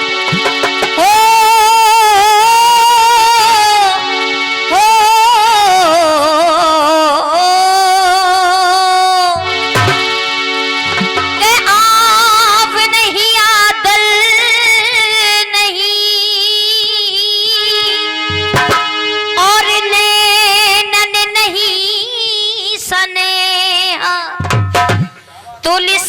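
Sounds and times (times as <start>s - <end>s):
instrumental accompaniment: 0.0s - 22.2s, 24.2s - 25.6s
woman singing wordless melody: 1.0s - 9.6s, 11.4s - 18.2s, 19.4s - 24.4s, 25.5s - 26.0s
low drum stroke: 18.3s - 19.0s.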